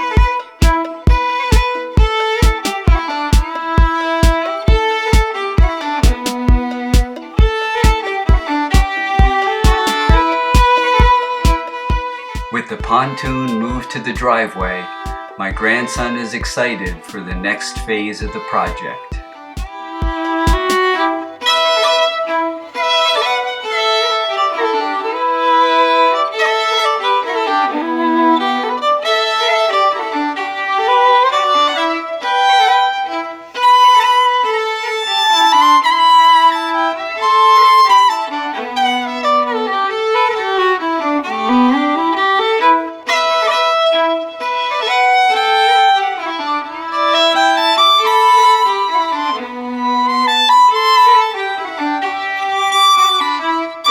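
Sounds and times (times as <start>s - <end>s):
lively fiddle tune: 0.0s - 53.9s.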